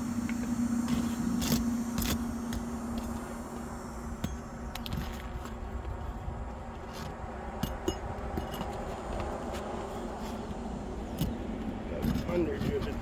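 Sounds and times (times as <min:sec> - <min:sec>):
metallic clicks and scrapes: 0:04.2 - 0:13.0.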